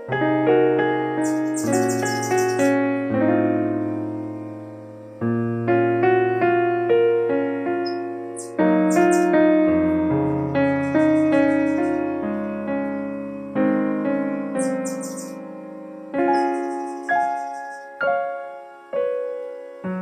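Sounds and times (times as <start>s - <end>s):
gentle piano music: 0.0s - 20.0s
faint high chirps: 1.2s - 2.8s, 7.7s - 9.4s, 10.4s - 12.1s, 14.6s - 15.4s, 16.2s - 18.0s.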